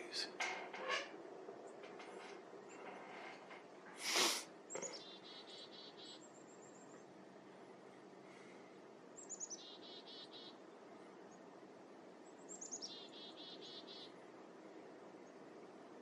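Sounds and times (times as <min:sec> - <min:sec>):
small songbird singing: 0:04.7 - 0:07.0, 0:09.2 - 0:10.6, 0:12.2 - 0:14.2.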